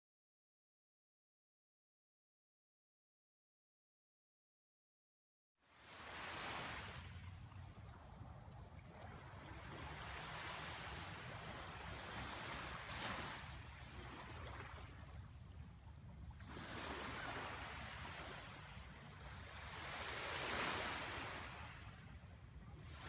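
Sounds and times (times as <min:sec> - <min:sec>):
small waves washing in: 0:05.7 - 0:23.0.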